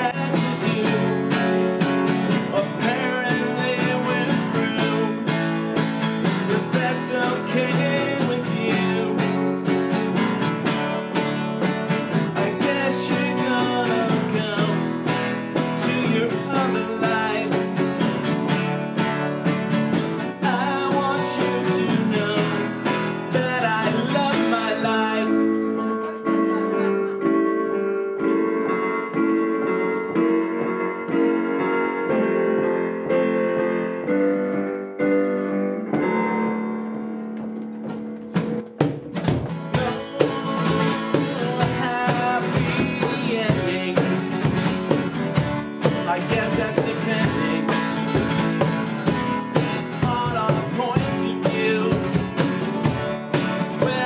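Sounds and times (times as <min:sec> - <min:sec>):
live band playing: 0:00.0 - 0:54.0
cajon: 0:37.0 - 0:54.0.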